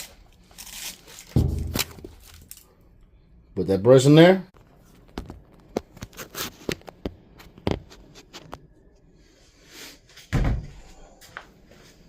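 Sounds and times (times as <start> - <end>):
brush knocking and scraping in duct: 1.2 - 2.5
heavy thud: 1.3 - 2.4.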